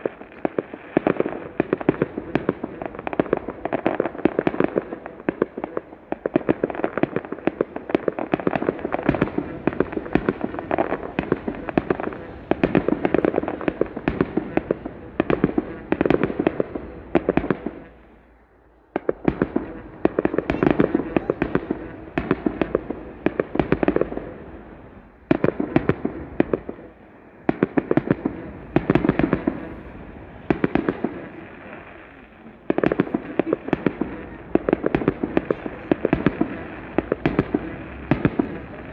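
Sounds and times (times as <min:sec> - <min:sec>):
fireworks bangs and crackling: 0:00.0 - 0:38.9.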